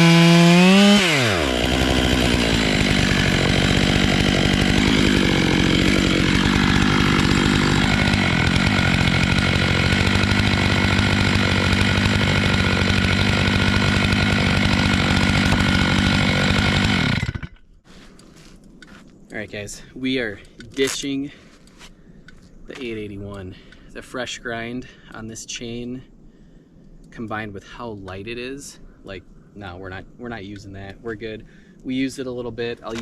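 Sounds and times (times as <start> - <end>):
chainsaw milling wood: 0.0 - 19.0, 32.8 - 33.0.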